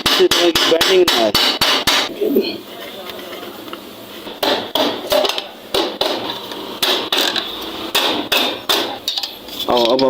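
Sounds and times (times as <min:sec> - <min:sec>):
hammer striking sheet metal: 0:00.0 - 0:02.1, 0:04.3 - 0:10.0.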